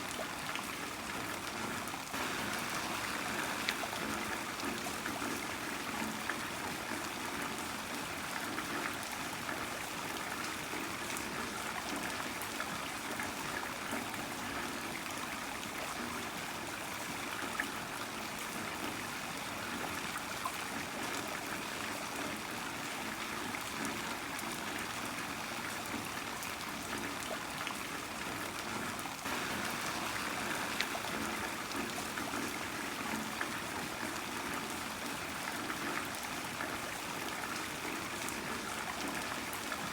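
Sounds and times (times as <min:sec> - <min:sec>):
heavy rain hissing: 0:02.2 - 0:05.6, 0:29.3 - 0:32.4.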